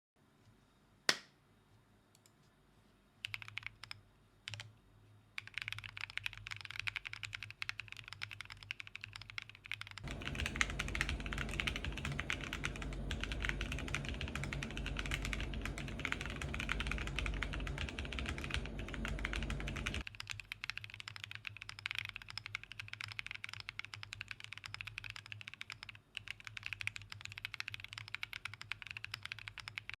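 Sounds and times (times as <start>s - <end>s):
mechanical keyboard typing: 3.2s - 4.7s, 5.4s - 30.0s
low rumble: 10.0s - 20.0s.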